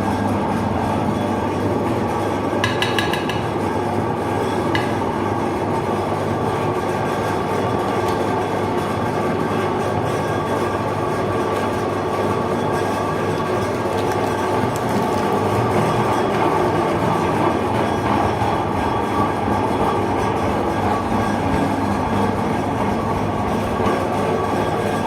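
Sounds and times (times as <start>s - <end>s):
electric meat grinder running: 12.2s - 25.0s.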